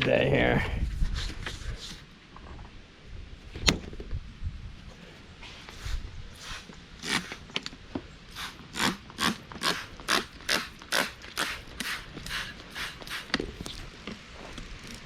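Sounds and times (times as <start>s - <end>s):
brush scrubbing carpet: 8.3s - 13.8s.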